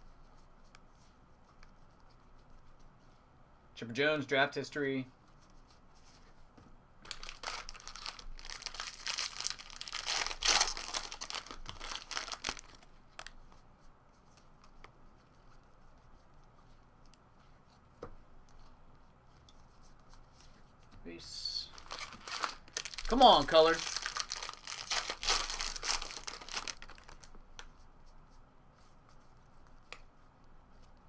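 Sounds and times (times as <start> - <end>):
foil wrapper tearing and crinkling: 7.0 - 13.3, 21.8 - 27.3.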